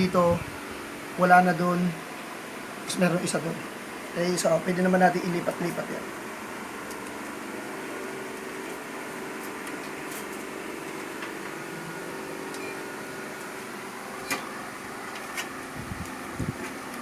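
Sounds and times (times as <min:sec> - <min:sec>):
fan humming: 0:00.0 - 0:17.0.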